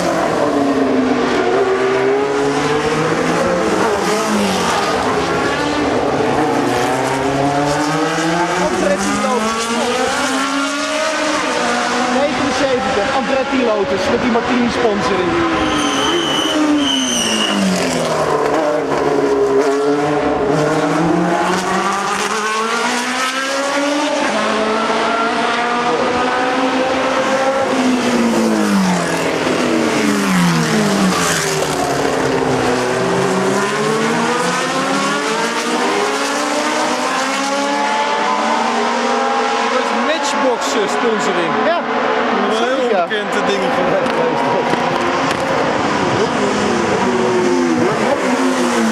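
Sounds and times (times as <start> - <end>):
race car engines revving: 0.0 - 48.9.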